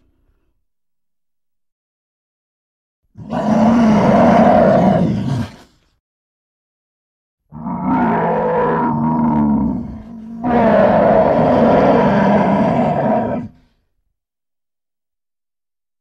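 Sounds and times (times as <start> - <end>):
lion roaring: 3.2 - 5.8, 7.5 - 13.8.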